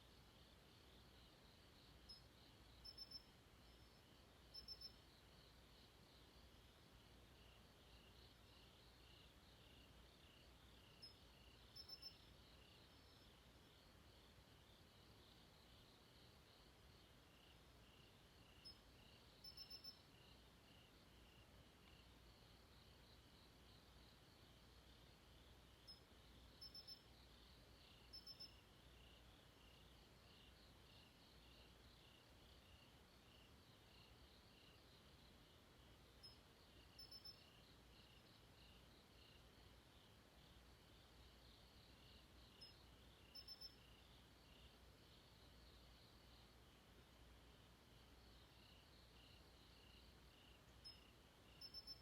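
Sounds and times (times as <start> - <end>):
crickets chirping: 0.0 - 52.0
faint low hum: 0.0 - 52.0
crickets pulsing trill: 2.1 - 5.2, 10.9 - 13.2, 18.4 - 20.8, 26.6 - 27.1, 27.8 - 29.1, 36.2 - 38.2, 42.0 - 44.0, 48.6 - 52.0.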